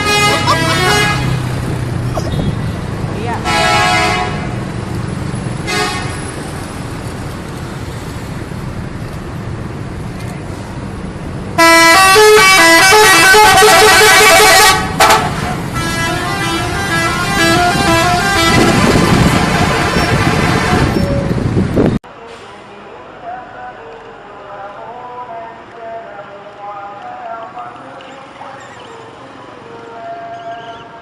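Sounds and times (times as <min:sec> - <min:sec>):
musical bus air horn tune: 0:00.0 - 0:01.4, 0:03.4 - 0:04.5, 0:05.6 - 0:06.2, 0:11.6 - 0:21.0
road traffic rumble: 0:00.0 - 0:31.0.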